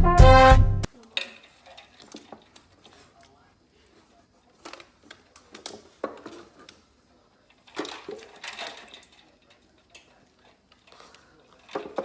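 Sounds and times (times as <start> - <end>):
objects scraping: 3.9 - 12.0.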